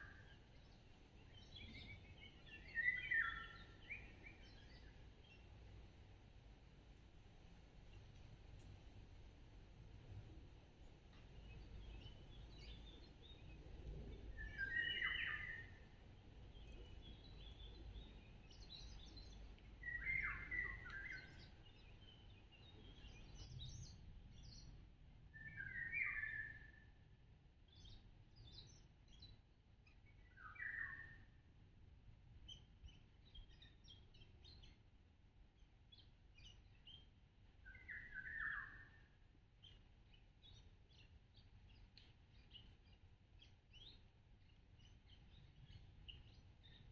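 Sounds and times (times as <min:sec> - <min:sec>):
faint high bird chirps: 0:36.0 - 0:46.9.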